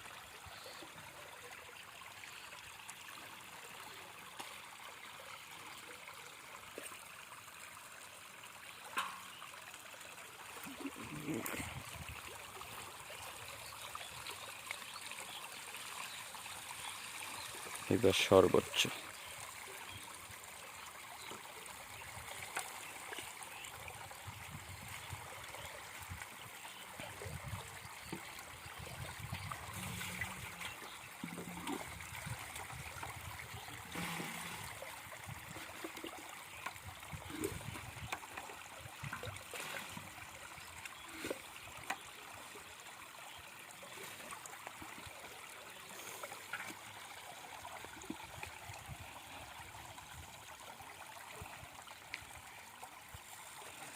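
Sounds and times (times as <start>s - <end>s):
water trickling and gurgling: 0.0s - 53.9s
small splashes and knocks: 8.7s - 9.8s, 24.8s - 42.6s.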